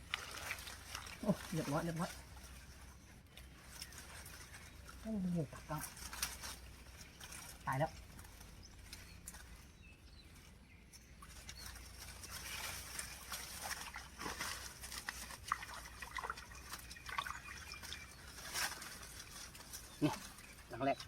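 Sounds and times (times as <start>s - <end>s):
water sloshing and trickling: 0.0s - 21.0s
small splashes and drips: 11.1s - 20.7s.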